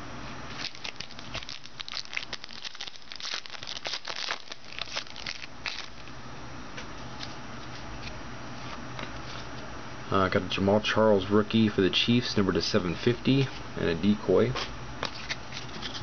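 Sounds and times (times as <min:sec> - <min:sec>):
plastic wrapper crinkling: 0:00.5 - 0:06.1.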